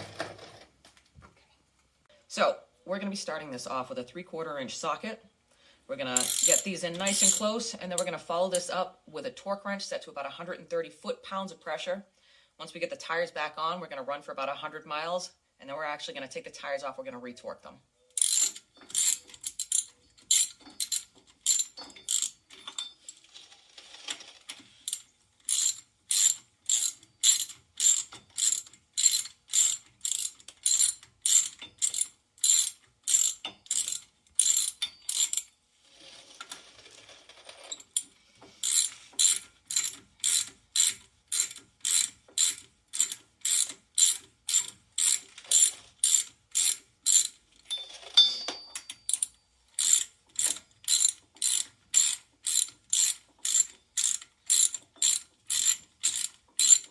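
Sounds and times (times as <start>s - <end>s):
hand ratchet clicking: 6.2s - 8.1s, 18.2s - 22.9s, 24.8s - 35.5s, 37.8s - 47.4s, 49.0s - 56.9s.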